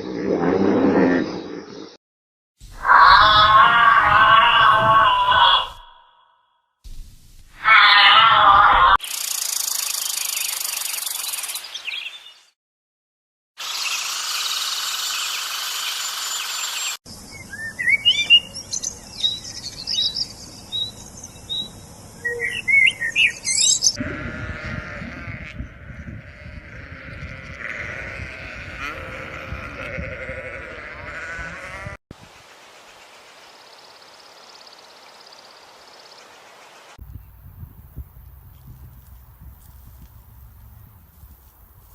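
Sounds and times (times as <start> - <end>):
animal calls: 2.8 - 6.3, 7.6 - 9.0, 24.0 - 32.0
birds chirping: 13.7 - 31.9.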